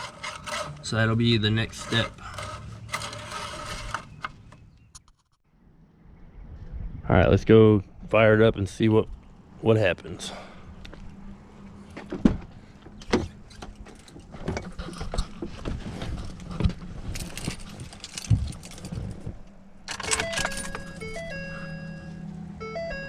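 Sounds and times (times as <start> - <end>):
keys jangling: 17.1 - 19.2, 19.9 - 21.4
dashboard chime beeps: 20.2 - 23.0.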